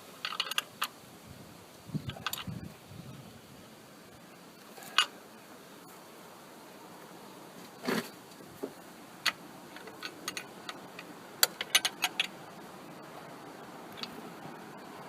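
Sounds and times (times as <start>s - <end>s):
metal tools clinking: 0.2s - 0.9s, 9.7s - 10.8s, 11.4s - 12.4s
sharp metallic clicks: 9.2s - 12.4s.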